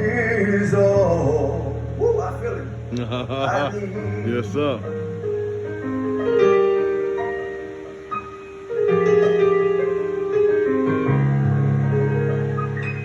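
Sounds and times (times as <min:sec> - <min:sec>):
person singing: 0:02.9 - 0:04.8.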